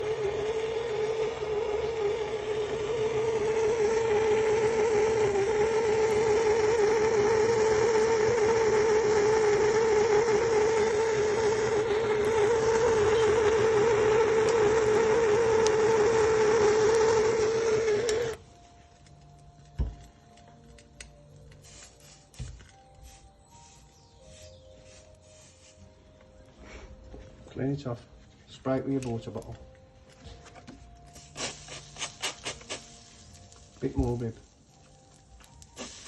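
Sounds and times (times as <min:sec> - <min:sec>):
blowtorch flame hissing: 0:00.0 - 0:18.4, 0:21.5 - 0:25.9, 0:31.1 - 0:36.0.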